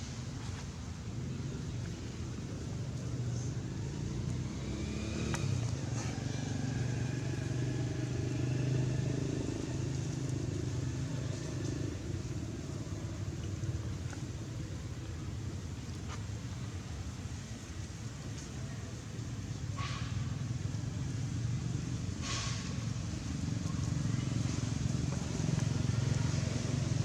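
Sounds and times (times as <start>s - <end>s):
motor vehicle passing: 1.2s - 13.4s.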